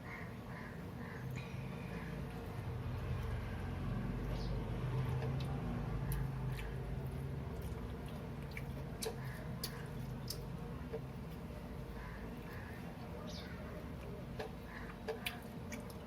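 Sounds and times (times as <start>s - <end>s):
steady low hum: 0.0s - 16.0s
person chewing food: 5.0s - 13.2s, 13.8s - 16.0s.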